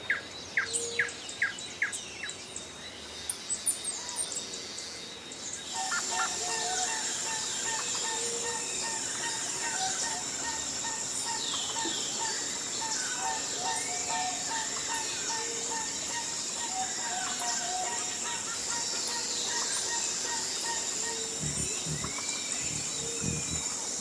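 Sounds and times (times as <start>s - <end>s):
chorus of calling birds: 4.0s - 24.0s
birds chirping: 5.4s - 24.0s
high-pitched hum: 21.0s - 24.0s.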